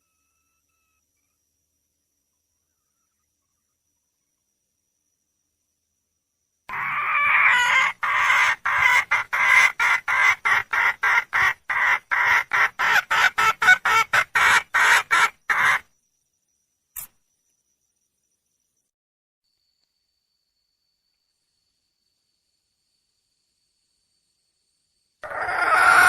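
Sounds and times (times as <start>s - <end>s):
hen calling with clucking notes: 6.7s - 15.9s, 25.2s - 26.0s.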